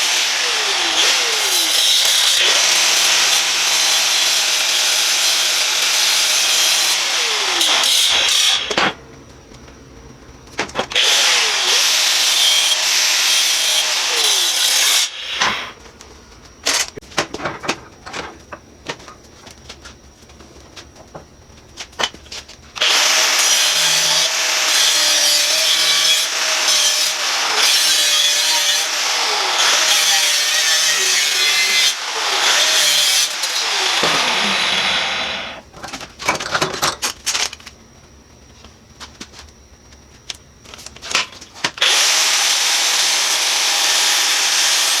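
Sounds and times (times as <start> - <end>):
power tool cutting steel: 0.0 - 8.8, 11.0 - 15.8, 22.8 - 35.6, 41.8 - 45.0
motor winding down: 30.5 - 35.6.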